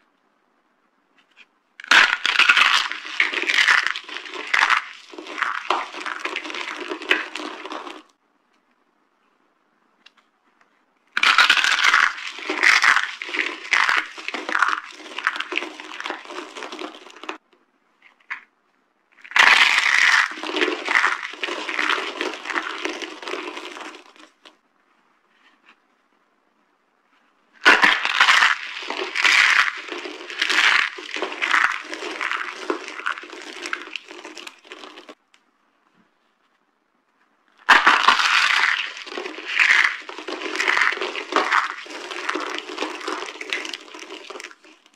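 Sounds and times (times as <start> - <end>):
dry soap crunching and crackling: 1.8 - 8.1, 11.1 - 17.4, 19.2 - 24.6, 27.6 - 35.2, 37.5 - 44.9.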